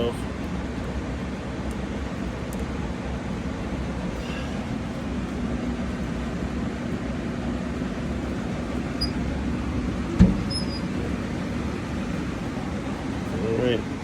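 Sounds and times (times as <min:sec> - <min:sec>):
furnace fan humming: 0:00.0 - 0:14.0
single thump: 0:10.2 - 0:10.5.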